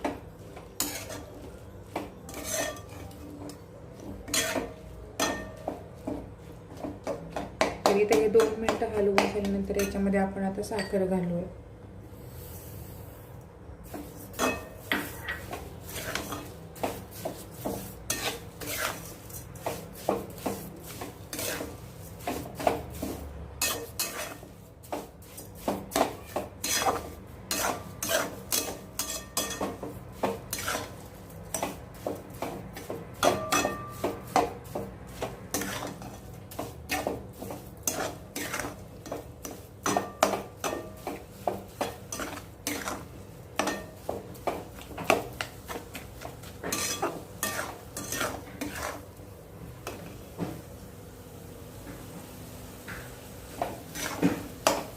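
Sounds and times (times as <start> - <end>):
utensil scraping and knocking a pan: 0.8 - 3.4, 4.0 - 9.4, 13.9 - 49.0.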